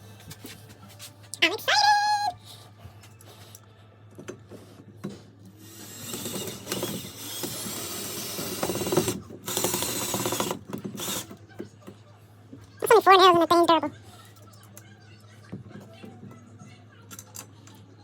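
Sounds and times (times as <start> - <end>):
power drill driving a screw: 5.6 - 11.3.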